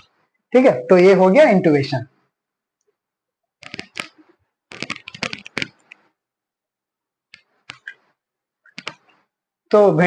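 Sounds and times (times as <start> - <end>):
sharp clicks and taps: 3.6 - 6.1, 7.3 - 9.2.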